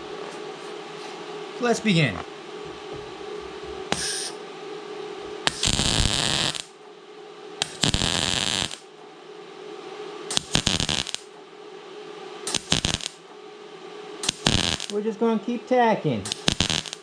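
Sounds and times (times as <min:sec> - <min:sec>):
welder arc crackling: 0:05.4 - 0:06.8, 0:07.6 - 0:08.9, 0:10.3 - 0:11.3, 0:12.5 - 0:13.2, 0:14.2 - 0:15.1, 0:16.2 - 0:17.0.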